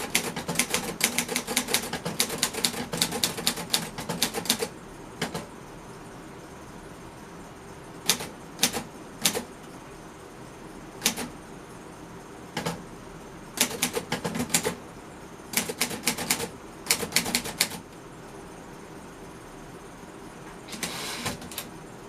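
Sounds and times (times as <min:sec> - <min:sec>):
manual typewriter keystrokes: 0:00.0 - 0:05.5, 0:08.1 - 0:09.5, 0:11.0 - 0:11.3, 0:13.6 - 0:14.8, 0:15.5 - 0:17.8, 0:20.7 - 0:21.7.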